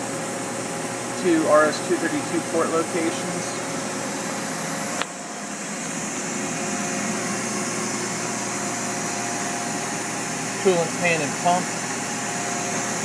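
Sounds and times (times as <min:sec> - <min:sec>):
fan hum: 0:00.0 - 0:13.0.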